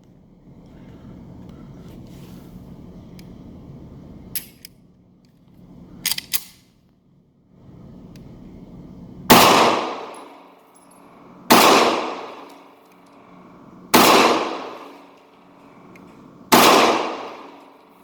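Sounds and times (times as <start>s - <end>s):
pistol shots echoing: 9.3s - 18.0s.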